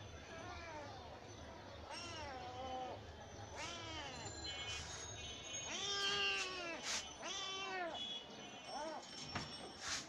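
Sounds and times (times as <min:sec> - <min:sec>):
cat meowing: 0:01.9 - 0:03.0, 0:03.6 - 0:04.2, 0:05.7 - 0:08.0.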